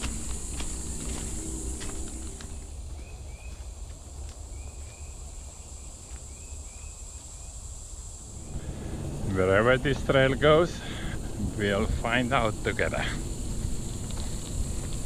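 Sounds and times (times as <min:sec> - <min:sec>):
high-pitched insect drone: 0:00.0 - 0:03.0, 0:04.7 - 0:15.0
low rumble: 0:08.2 - 0:15.0.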